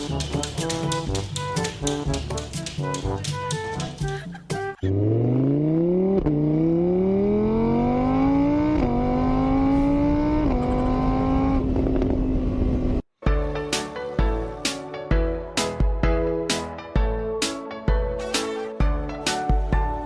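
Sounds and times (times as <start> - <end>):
engine accelerating through gears: 4.8 - 13.1.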